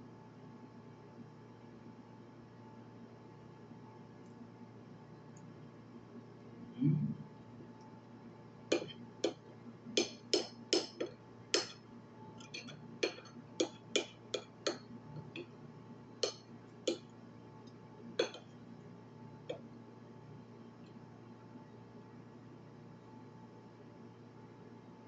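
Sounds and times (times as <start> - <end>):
tableware clinking: 12.4 - 15.4.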